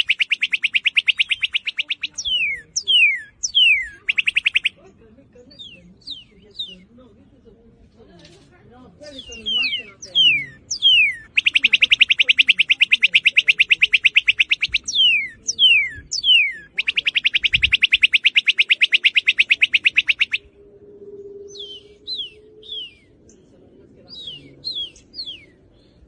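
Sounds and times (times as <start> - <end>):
cardinal trilling: 0.0 - 4.8, 9.1 - 23.2
down-slurred bird whistles: 0.0 - 4.8, 9.2 - 23.2, 24.1 - 25.9.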